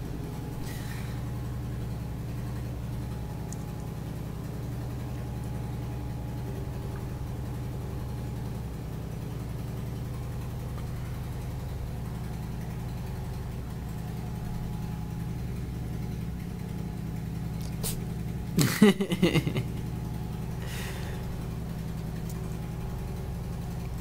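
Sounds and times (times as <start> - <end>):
low hum with rapid pulse: 0.0 - 24.0.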